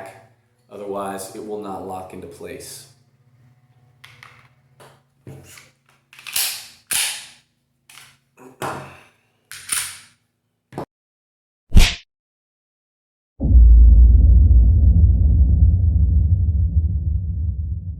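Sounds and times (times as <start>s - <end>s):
pistol magazine clicks and scrapes: 5.6s - 8.2s, 9.5s - 10.2s
loud deep rumble: 13.4s - 17.9s.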